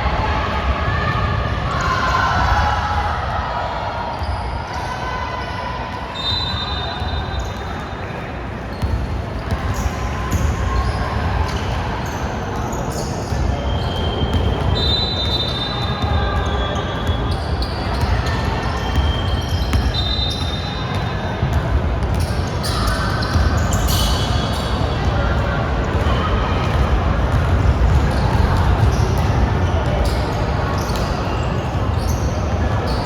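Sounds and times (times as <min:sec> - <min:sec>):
shoe squeaks: 0:08.7 - 0:21.0, 0:28.1 - 0:33.0
basketball bouncing: 0:26.6 - 0:29.3.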